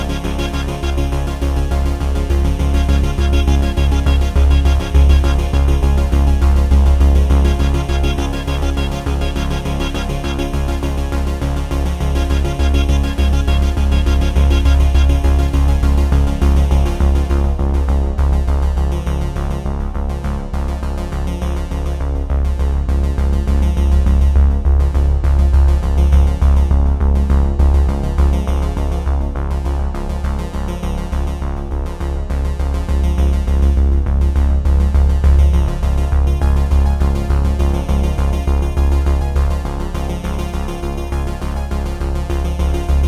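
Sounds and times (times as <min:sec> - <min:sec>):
electronic synthesizer music: 0:00.0 - 0:17.6.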